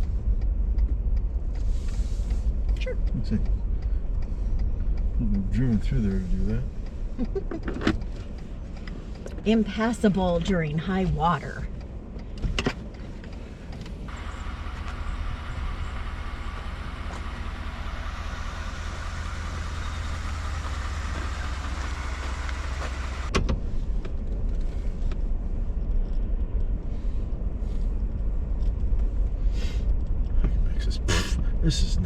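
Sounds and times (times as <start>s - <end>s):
engine and road rumble: 0.0s - 32.0s.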